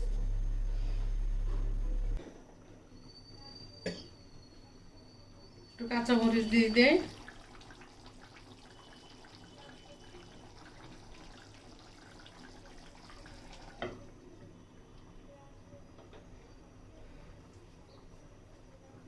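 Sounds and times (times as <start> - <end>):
curry simmering in a pot: 5.5 - 16.7.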